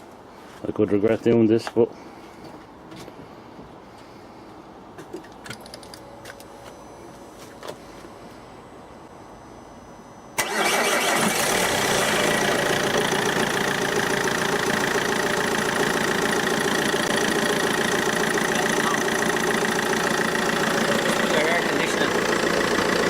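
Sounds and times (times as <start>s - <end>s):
car engine idling: 10.4s - 23.0s
car engine starting: 10.4s - 23.0s.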